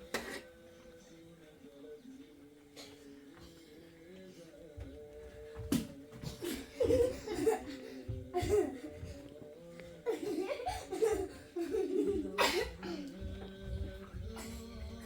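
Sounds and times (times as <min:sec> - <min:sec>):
faint background music: 0:00.0 - 0:15.0
person laughing: 0:10.0 - 0:13.1.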